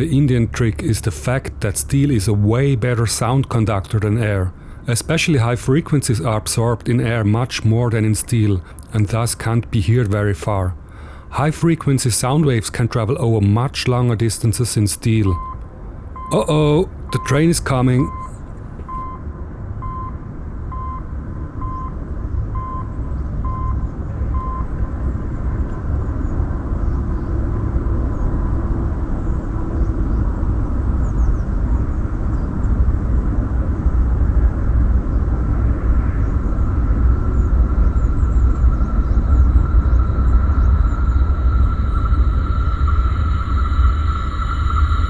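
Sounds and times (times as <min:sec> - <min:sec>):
low train rumble: 0:00.0 - 0:45.0
short beeps: 0:15.2 - 0:19.2
rails singing high ringing tone: 0:36.5 - 0:45.0.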